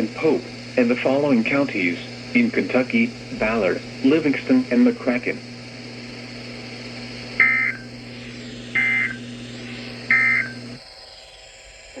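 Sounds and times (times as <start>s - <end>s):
low hum: 0.0s - 11.9s
digital data tone bursts: 7.4s - 8.0s, 8.7s - 10.8s.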